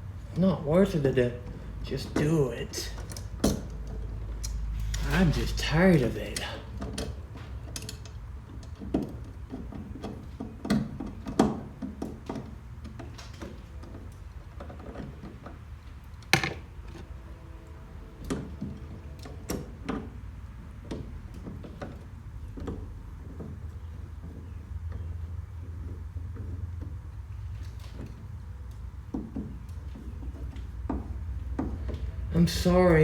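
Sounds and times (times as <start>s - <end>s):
low steady hum: 0.0s - 33.0s
clicks and knocks of objects: 6.1s - 17.2s, 18.2s - 32.3s.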